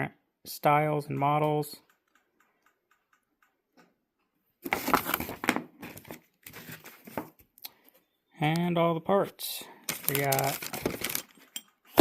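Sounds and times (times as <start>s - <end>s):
packaging rustling and crinkling: 4.6s - 7.3s, 9.8s - 12.0s.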